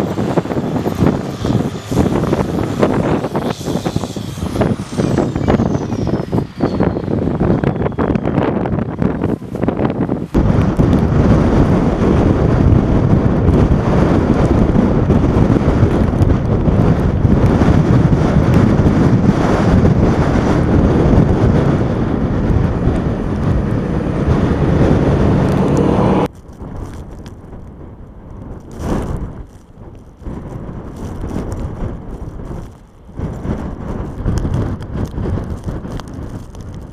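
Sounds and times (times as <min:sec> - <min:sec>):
heavy vehicle engine din: 0:00.0 - 0:26.3
wind buffeting microphone: 0:00.0 - 0:36.9.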